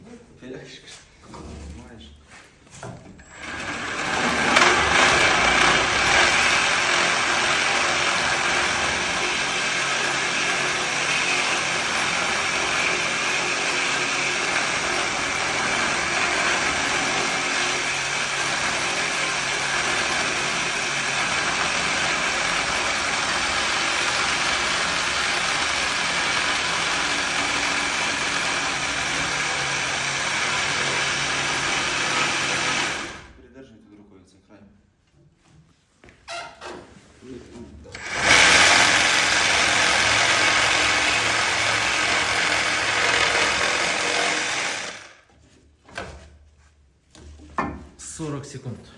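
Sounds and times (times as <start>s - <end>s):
reciprocating saw cutting metal pipe: 3.3s - 33.3s, 38.0s - 45.2s.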